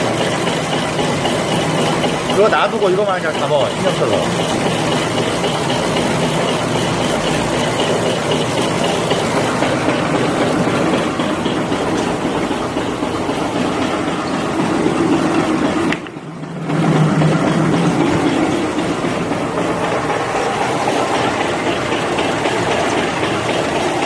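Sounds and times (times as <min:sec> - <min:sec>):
machine running: 0:00.0 - 0:24.0.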